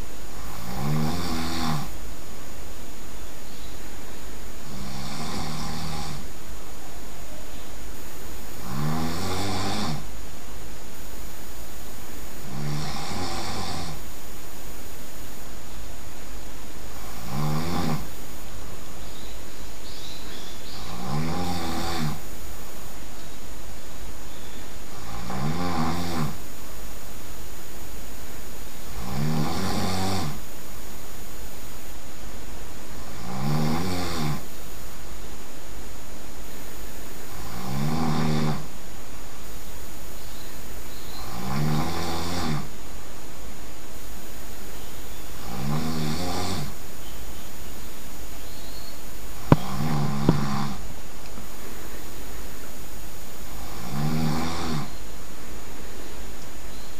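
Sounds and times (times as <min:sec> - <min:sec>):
person snoring loudly: 0:00.3 - 0:02.0, 0:04.6 - 0:06.3, 0:08.6 - 0:10.1, 0:12.4 - 0:14.0, 0:17.0 - 0:18.2, 0:20.8 - 0:22.3, 0:24.9 - 0:26.4, 0:28.9 - 0:30.4, 0:32.9 - 0:34.5, 0:37.3 - 0:38.7, 0:41.2 - 0:42.7, 0:45.4 - 0:46.8, 0:49.4 - 0:50.9, 0:53.4 - 0:55.0.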